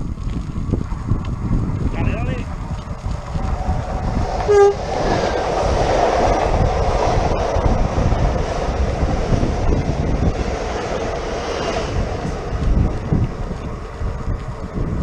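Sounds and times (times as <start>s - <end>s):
wind buffeting microphone: 0.0s - 15.0s
electric train passing: 0.8s - 15.0s
train horn toot: 4.4s - 4.8s.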